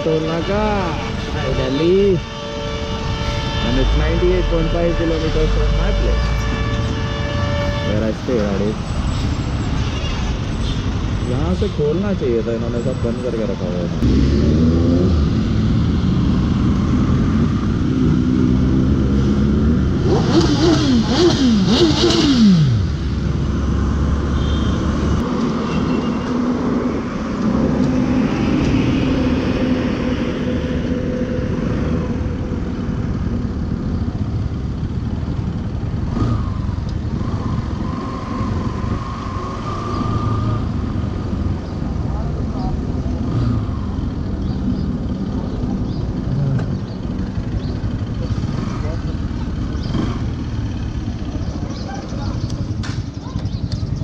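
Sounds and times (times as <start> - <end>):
motorcycle engine running: 43.9 - 54.0.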